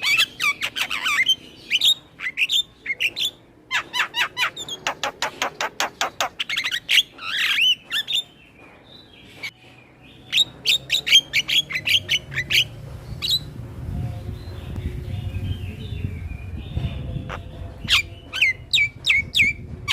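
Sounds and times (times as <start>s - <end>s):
low rumble: 12.2s - 19.9s.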